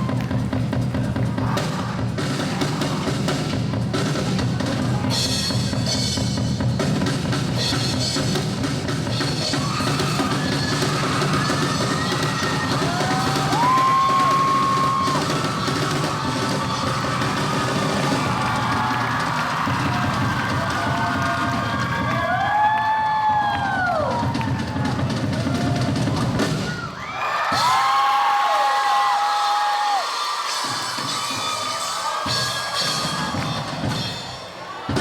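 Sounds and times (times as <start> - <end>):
drum kit solo: 0.0 - 27.0, 30.4 - 35.0.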